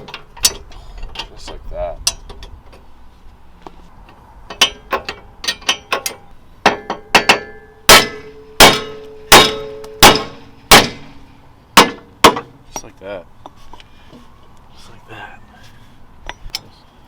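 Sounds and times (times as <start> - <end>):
hammer striking metal: 4.6 - 11.2, 11.8 - 12.5.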